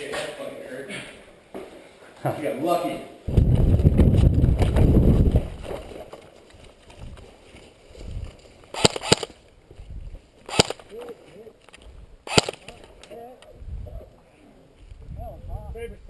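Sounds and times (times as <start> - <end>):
airsoft gunfire snaps: 8.8 - 9.4, 10.5 - 10.9, 12.3 - 12.8.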